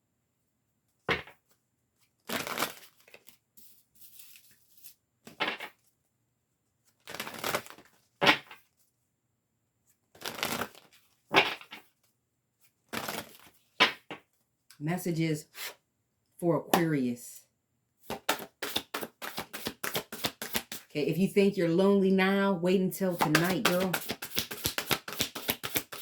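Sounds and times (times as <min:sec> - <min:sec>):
cards being shuffled: 0:02.2 - 0:05.9, 0:06.9 - 0:08.8, 0:10.1 - 0:12.0, 0:12.9 - 0:14.1, 0:18.0 - 0:20.9, 0:23.1 - 0:26.0.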